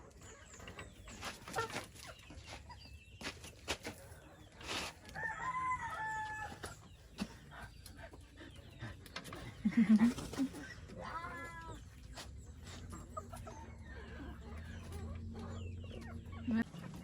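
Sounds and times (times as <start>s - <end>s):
chickens clucking: 0.0s - 17.0s
rooster crowing: 5.2s - 6.6s.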